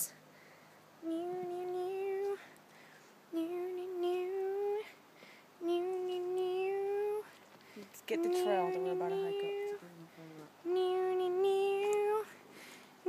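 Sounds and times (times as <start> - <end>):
person singing long held notes: 1.0 - 2.4, 3.3 - 5.0, 5.6 - 7.3, 8.2 - 12.4.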